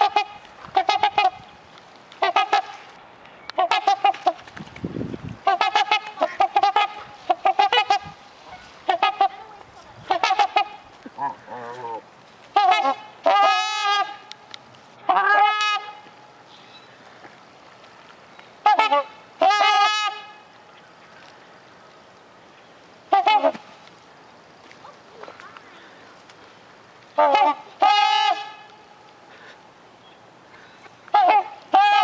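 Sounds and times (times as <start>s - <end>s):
swans honking: 0.0s - 4.5s, 5.4s - 17.2s, 18.5s - 21.3s, 23.0s - 24.1s, 27.0s - 29.6s, 30.5s - 32.0s.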